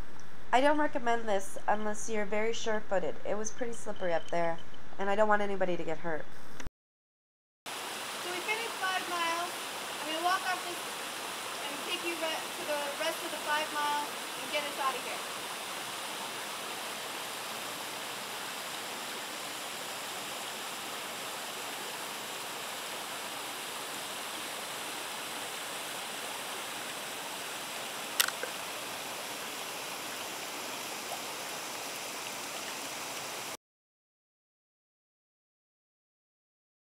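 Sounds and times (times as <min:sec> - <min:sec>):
creek water flowing: 0:07.7 - 0:33.6
sharp click: 0:28.2 - 0:28.5.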